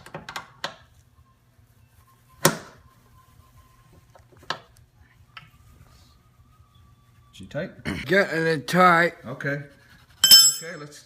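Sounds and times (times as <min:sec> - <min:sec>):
metal clank with ring: 0:10.2 - 0:10.8.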